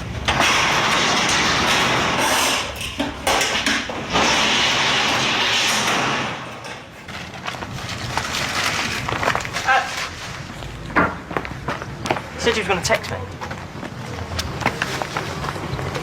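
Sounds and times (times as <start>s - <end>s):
metal roller shutter rattling: 0.0s - 10.6s.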